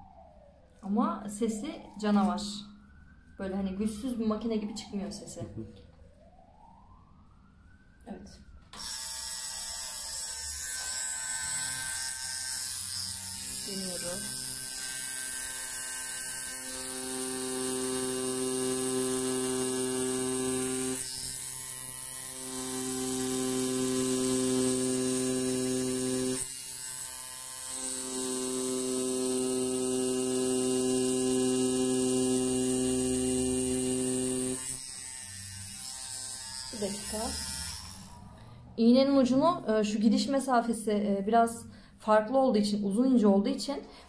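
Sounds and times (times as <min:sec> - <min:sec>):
tattoo machine humming: 0:08.7 - 0:38.4.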